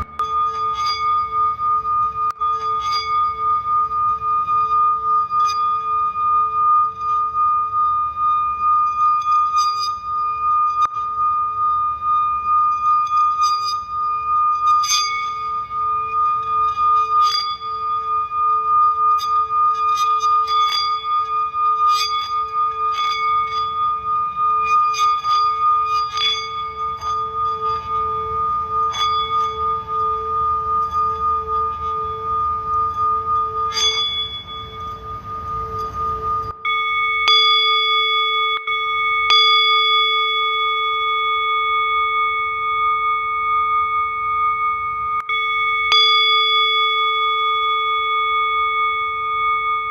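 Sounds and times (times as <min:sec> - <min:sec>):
high steady ringing tones: 0:00.0 - 0:49.9
singing bowl ringing: 0:00.0 - 0:49.9
struck bells ringing: 0:00.0 - 0:49.9
low background rumble: 0:26.5 - 0:36.5.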